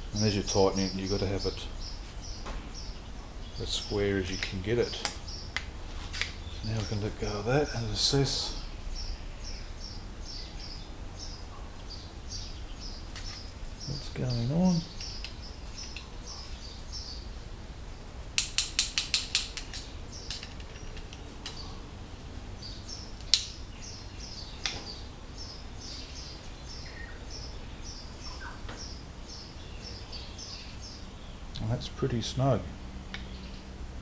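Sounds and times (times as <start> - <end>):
sharp clicks: 18.4 - 21.6, 23.2 - 23.6.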